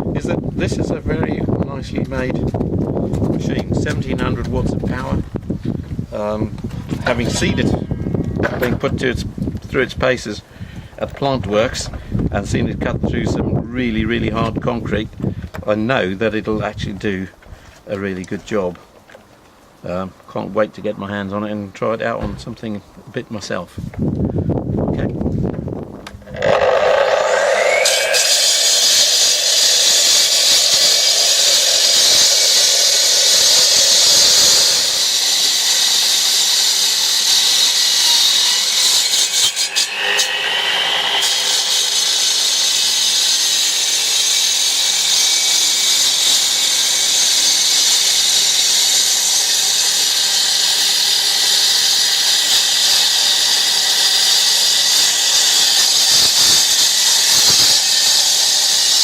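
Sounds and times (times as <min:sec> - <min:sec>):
electric disc cutter whine: 0:26.2 - 0:59.0.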